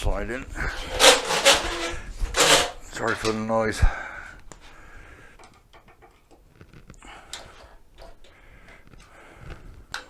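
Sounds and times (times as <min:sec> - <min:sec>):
metal parts clicking and knocking: 0:00.7 - 0:03.4.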